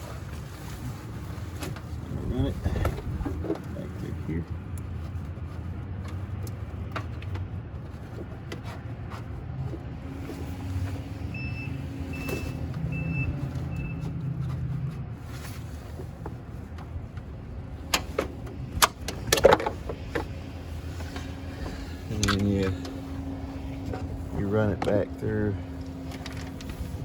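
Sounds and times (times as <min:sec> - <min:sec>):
sharp clicks and knocks: 0:16.2 - 0:23.0.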